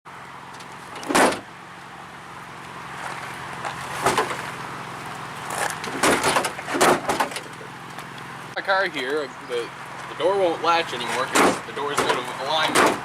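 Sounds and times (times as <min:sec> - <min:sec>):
car door thumping shut: 0:01.0 - 0:01.4, 0:05.9 - 0:07.5, 0:11.3 - 0:13.0.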